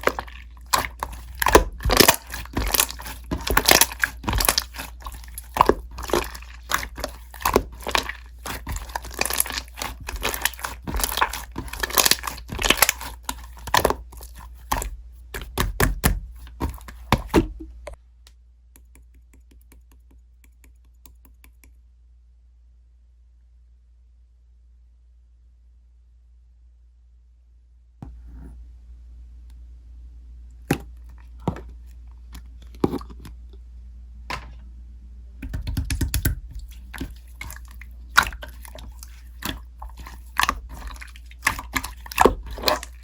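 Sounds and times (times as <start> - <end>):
slime being squished: 0.0 - 17.9, 35.4 - 43.0.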